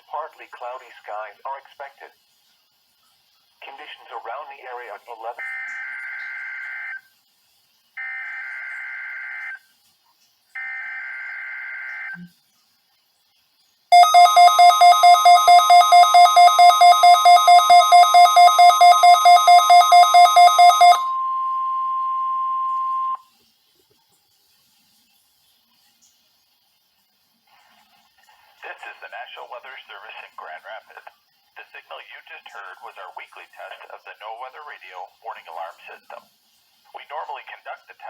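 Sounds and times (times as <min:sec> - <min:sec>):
harsh buzzing digital chirps: 0:03.6 - 0:07.1, 0:13.9 - 0:23.2
steady warning alarm tone: 0:05.4 - 0:07.0, 0:08.0 - 0:09.6, 0:10.6 - 0:12.3, 0:13.9 - 0:23.2
loud pulsing beep: 0:13.9 - 0:23.2.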